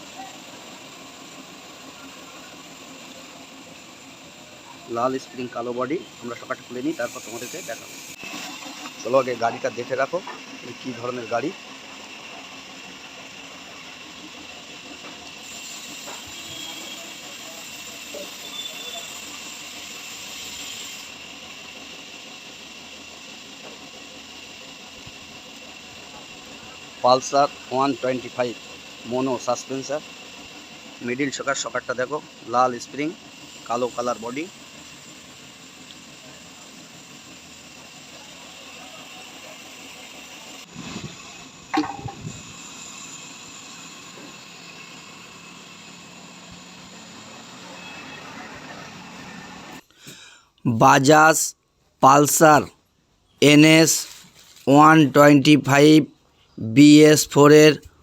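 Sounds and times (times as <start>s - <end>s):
steady background hiss: 15.8s - 47.9s, 49.2s - 58.0s.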